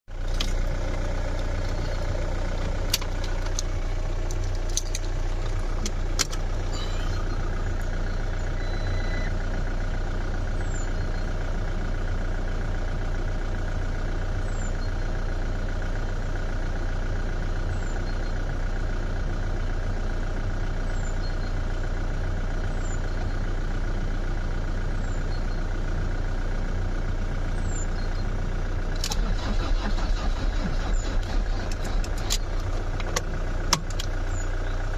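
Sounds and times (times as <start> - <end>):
car engine cranking: 0.1 - 9.3, 28.9 - 34.9.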